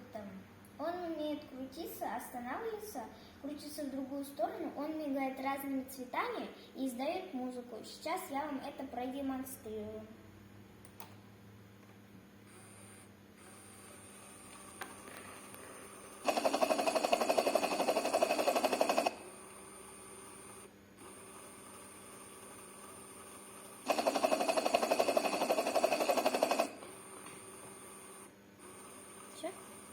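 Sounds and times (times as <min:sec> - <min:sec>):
small motor fan buzzing rattle: 0:12.4 - 0:29.9.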